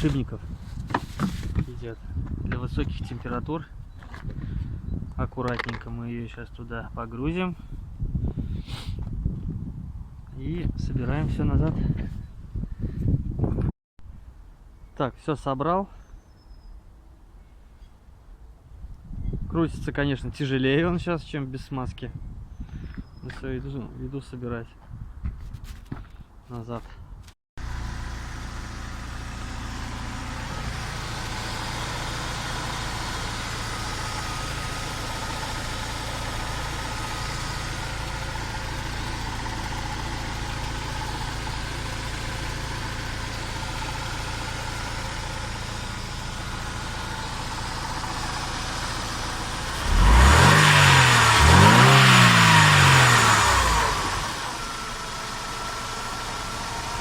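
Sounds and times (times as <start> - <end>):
car engine idling and revving: 27.6 - 57.0.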